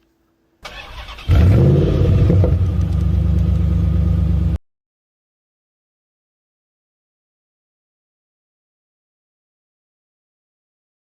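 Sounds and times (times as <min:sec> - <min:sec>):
engine starting and idling: 0:00.6 - 0:04.4.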